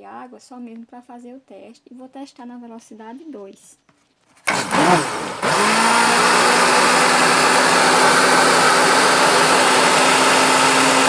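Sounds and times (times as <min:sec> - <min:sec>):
blender motor humming: 0:04.5 - 0:11.0.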